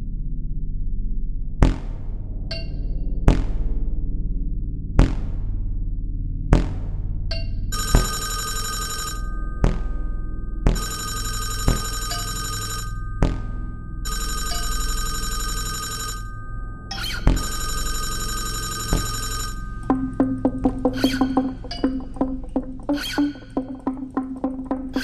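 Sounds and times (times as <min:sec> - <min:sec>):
low hum: 0:00.0 - 0:25.0
bell-like ringing tone: 0:02.5 - 0:02.8, 0:07.3 - 0:24.0
sharp thumps: 0:09.6 - 0:10.8, 0:19.8 - 0:25.0
plucked notes: 0:19.8 - 0:25.0.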